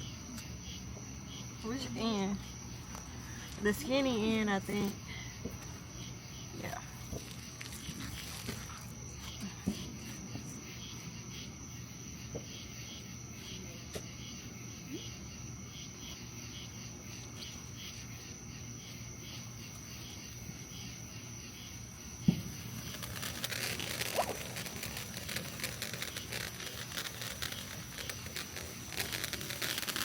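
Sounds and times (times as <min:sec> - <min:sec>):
crickets chirping: 0:00.0 - 0:30.0
firework hiss: 0:06.6 - 0:10.2, 0:22.0 - 0:30.0
firework pop: 0:22.2 - 0:30.0.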